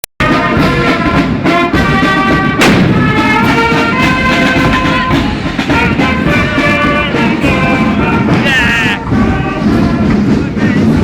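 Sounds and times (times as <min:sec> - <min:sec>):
brass band playing: 0:00.2 - 0:11.0
loud bang: 0:02.6 - 0:05.9.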